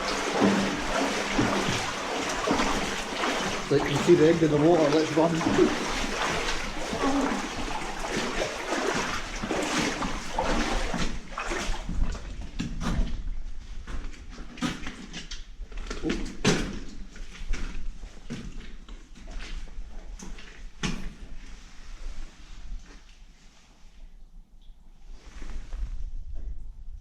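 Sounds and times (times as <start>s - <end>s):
footsteps wading through water: 0.0s - 12.6s.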